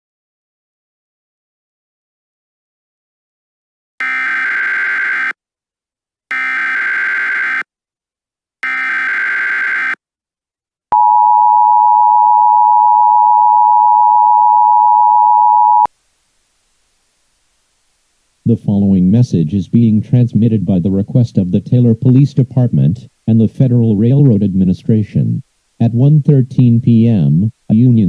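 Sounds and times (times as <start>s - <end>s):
two-tone attention signal: 4.0s - 5.3s, 6.3s - 7.6s, 8.6s - 10.0s
warbling data tones: 4.0s - 5.3s, 6.3s - 7.6s, 8.6s - 10.0s.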